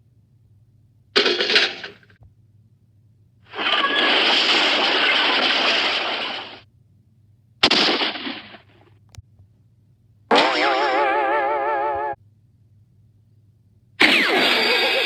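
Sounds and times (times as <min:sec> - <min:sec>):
cartoon crash sound effects: 0:03.5 - 0:06.6, 0:10.3 - 0:12.2, 0:14.0 - 0:15.0.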